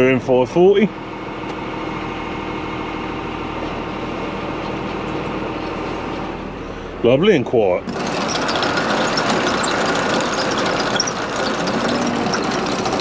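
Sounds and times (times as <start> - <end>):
tractor engine idling: 0.0 - 13.0
baler chains running: 7.9 - 13.0.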